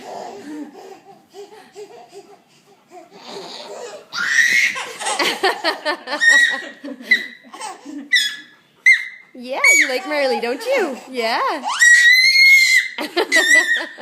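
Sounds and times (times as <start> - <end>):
baby laughing and squealing: 3.2 - 5.4, 6.1 - 10.6, 11.6 - 14.0.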